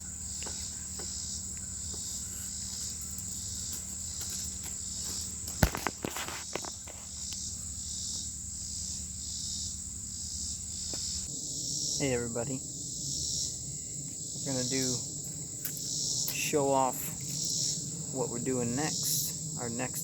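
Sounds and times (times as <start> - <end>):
insect chorus: 0.0 - 20.0.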